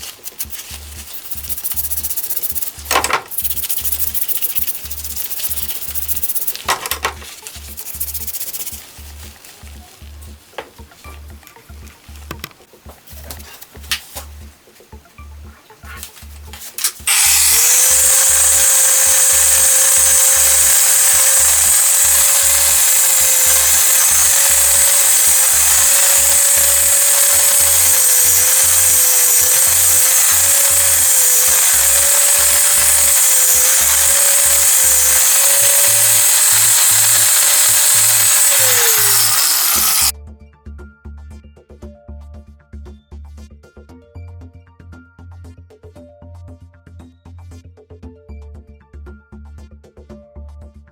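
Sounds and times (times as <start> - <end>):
music with steady beat: 0.0 - 20.3
power tool motor whine: 17.0 - 40.1.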